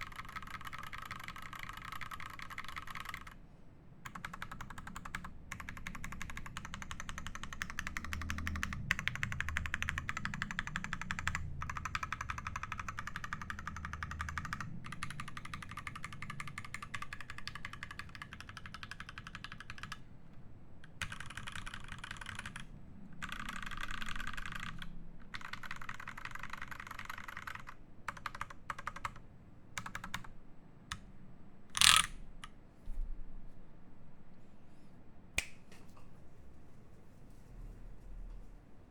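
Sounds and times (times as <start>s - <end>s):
mechanical keyboard typing: 0.0s - 3.4s, 4.0s - 20.0s, 20.8s - 29.2s, 29.8s - 31.0s, 31.8s - 32.2s.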